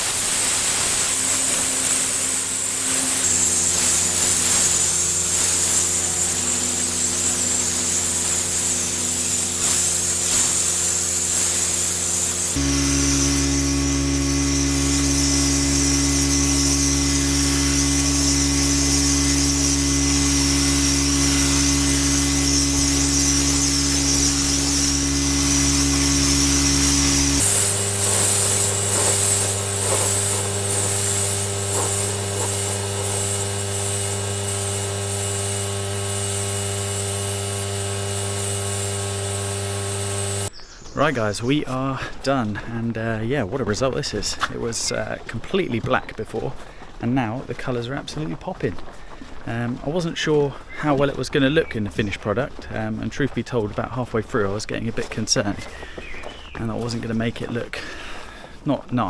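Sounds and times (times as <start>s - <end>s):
pressure washer machine drone: 0.0s - 40.5s
water jet hissing: 0.0s - 40.5s.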